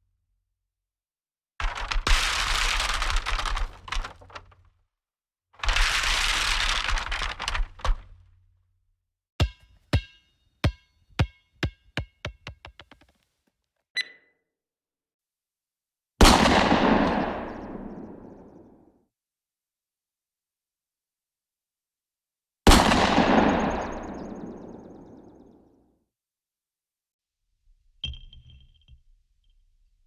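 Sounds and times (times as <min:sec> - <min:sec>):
short ding: 0:09.4 - 0:12.6
sharp knocks: 0:09.4 - 0:13.2.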